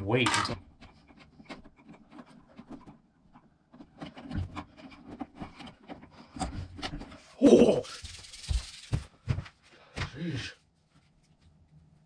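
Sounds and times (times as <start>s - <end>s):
handling clicks taps and rubs: 0.1s - 7.2s.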